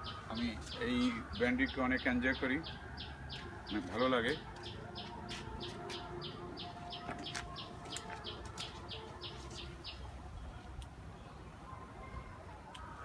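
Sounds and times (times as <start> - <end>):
bird chirping: 0.0 - 10.1.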